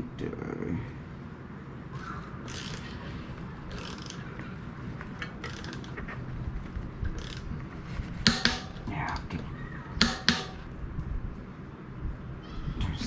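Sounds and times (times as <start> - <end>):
ratchet wrench clicking: 2.5 - 3.0, 3.7 - 4.3, 5.2 - 6.0, 7.2 - 7.5, 10.0 - 10.7.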